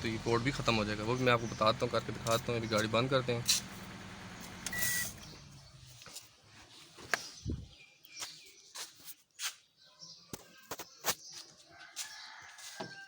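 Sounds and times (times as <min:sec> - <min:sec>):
car engine idling: 0:00.0 - 0:06.0
engine shutting off shudder: 0:00.0 - 0:06.0
birds chirping: 0:00.0 - 0:12.5.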